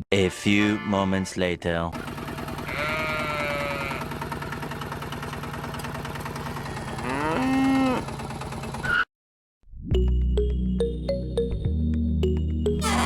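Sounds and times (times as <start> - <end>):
small engine running: 2.0 - 9.0
cow mooing: 2.7 - 4.1, 6.8 - 8.1.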